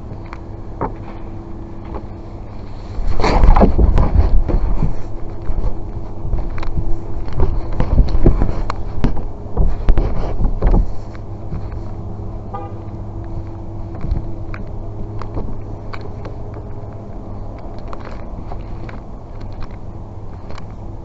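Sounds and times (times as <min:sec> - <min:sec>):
car alarm horn tones: 0:12.5 - 0:12.9.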